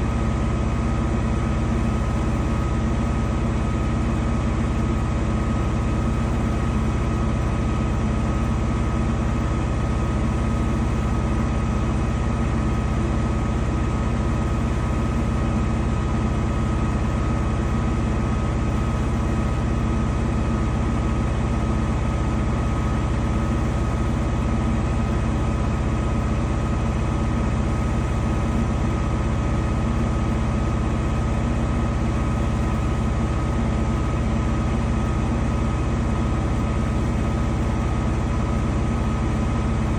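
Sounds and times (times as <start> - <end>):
washing machine high whine: 0.0 - 39.9
washing machine rumbling: 39.2 - 39.9.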